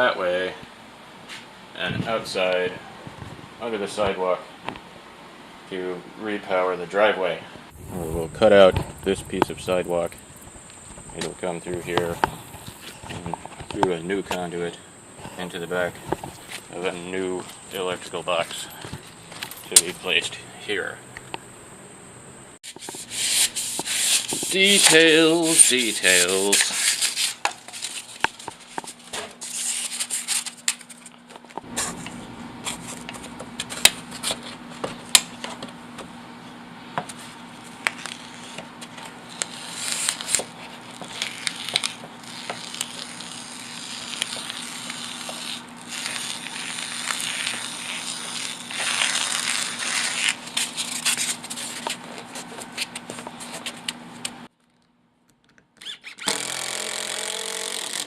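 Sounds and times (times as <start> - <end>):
steady low hum: 7.4 - 22.6, 23.6 - 54.5
scraping and rustling: 37.1 - 54.4.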